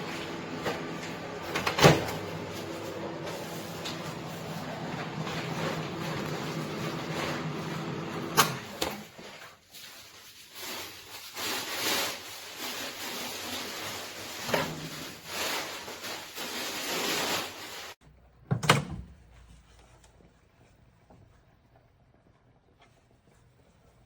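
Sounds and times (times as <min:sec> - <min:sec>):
microwave oven humming: 0:00.0 - 0:09.0.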